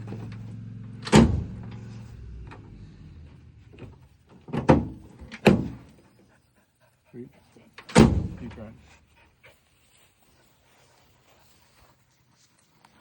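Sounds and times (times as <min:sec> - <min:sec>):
tailgate latch clunking: 0:00.1 - 0:01.8, 0:03.7 - 0:05.9, 0:07.8 - 0:08.4.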